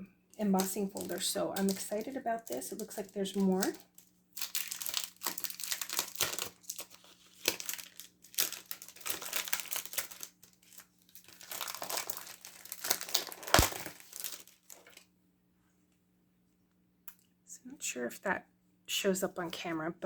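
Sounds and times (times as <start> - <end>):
plastic packaging crinkling: 0.4 - 15.1.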